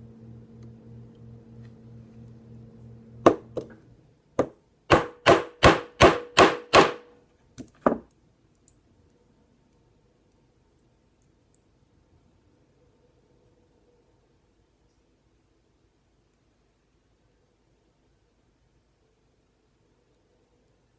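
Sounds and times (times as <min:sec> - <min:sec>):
small hammer striking metal: 0:04.4 - 0:08.0.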